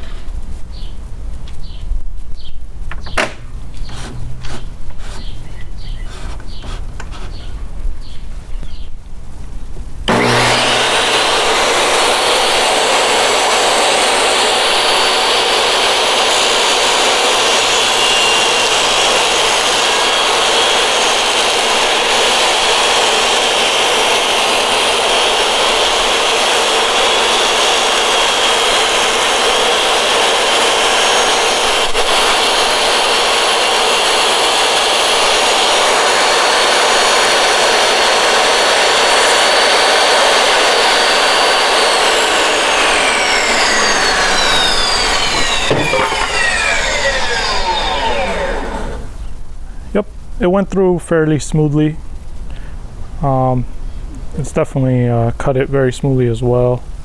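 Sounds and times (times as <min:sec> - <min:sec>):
table saw whining: 0:02.9 - 0:07.7, 0:10.1 - 0:49.3.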